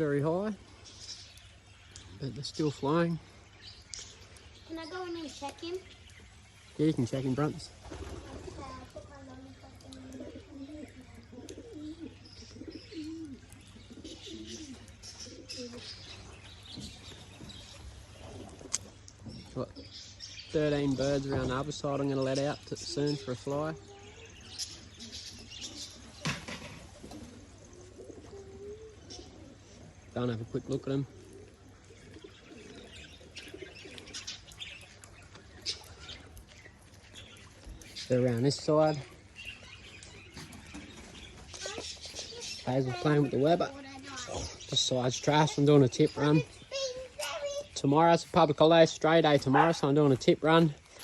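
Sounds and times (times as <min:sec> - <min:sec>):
pigeons cooing: 0:00.0 - 0:51.0
high bird chirps: 0:31.8 - 0:48.6.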